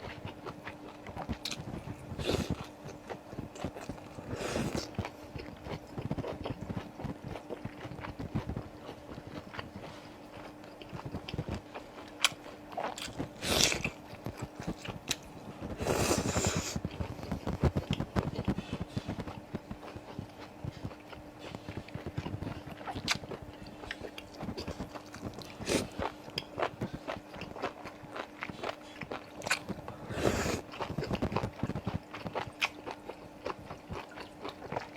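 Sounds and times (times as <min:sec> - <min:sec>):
biting and chewing: 0:00.0 - 0:34.9
faint steady hum: 0:00.0 - 0:34.9.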